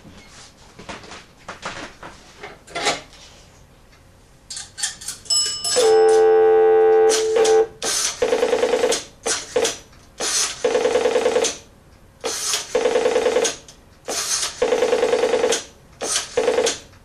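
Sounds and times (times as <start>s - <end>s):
payphone clicks and handling: 4.6s - 6.3s, 7.0s - 7.7s
steady bell-like tone: 5.3s - 7.7s.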